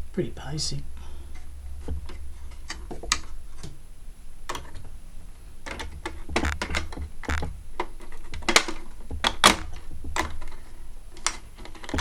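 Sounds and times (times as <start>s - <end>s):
low steady hum: 0.0s - 12.0s
plastic and metal parts clicking: 5.6s - 12.0s.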